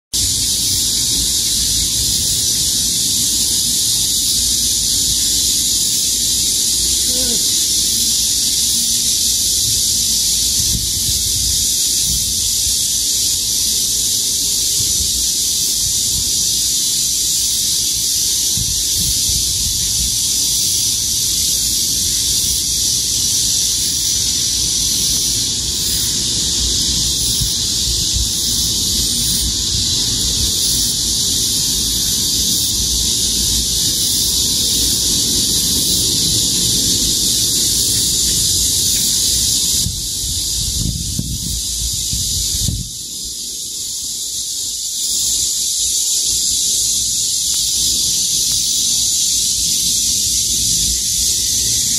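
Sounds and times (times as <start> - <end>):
cicadas and grass insects chirring: 0.1 - 51.9.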